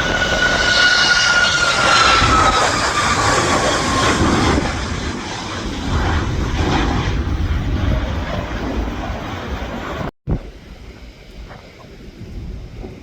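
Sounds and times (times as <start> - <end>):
jet engines roaring: 0.0 - 13.0
wind buffeting microphone: 0.0 - 13.0.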